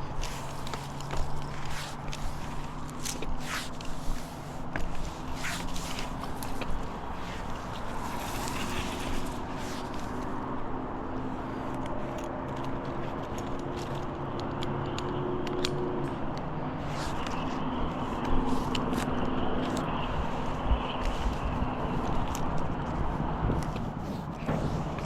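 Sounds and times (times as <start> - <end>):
engine running steadily: 0.0 - 25.0.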